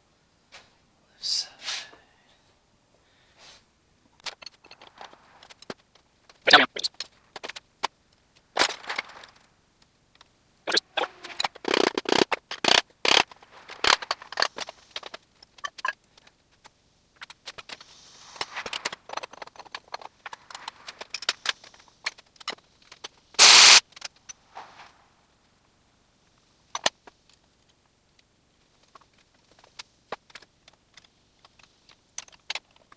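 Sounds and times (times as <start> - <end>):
short loud burst of noise: 23.4 - 23.8.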